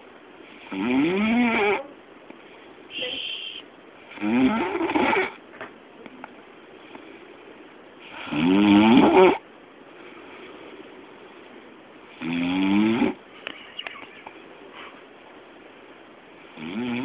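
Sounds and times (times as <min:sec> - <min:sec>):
man snoring loudly: 0:00.7 - 0:01.8, 0:08.1 - 0:09.4, 0:12.2 - 0:13.2, 0:16.6 - 0:17.0.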